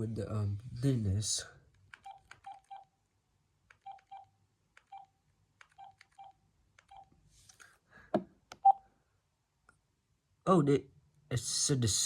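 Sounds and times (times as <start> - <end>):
phone key clicks and beeps: 2.0 - 2.9.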